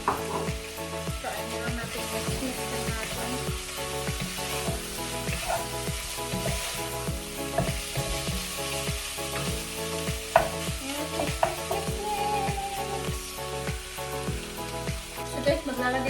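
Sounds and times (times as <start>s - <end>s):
chicken sizzling in frying pan: 0.0s - 16.0s
utensil scraping a pan: 4.2s - 8.1s.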